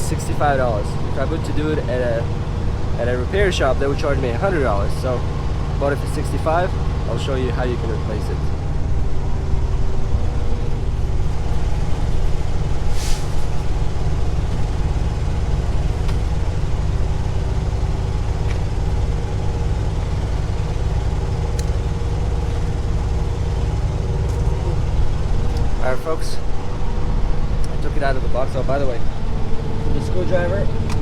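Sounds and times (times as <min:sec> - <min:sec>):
truck diesel engine idling: 0:00.0 - 0:31.0
air hiss: 0:12.8 - 0:13.9.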